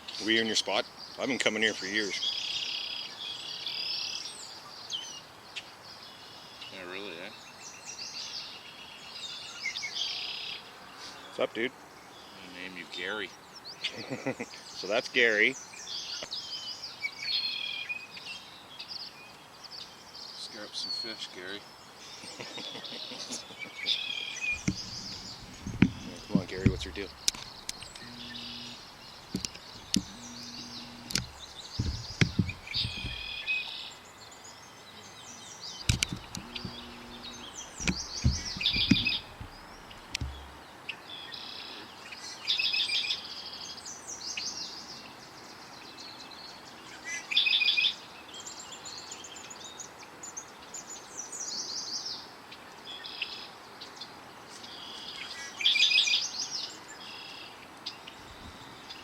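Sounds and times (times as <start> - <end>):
songbirds trilling: 0.0 - 52.2, 54.6 - 59.0
dull low thumps: 24.6 - 33.3, 35.9 - 40.6.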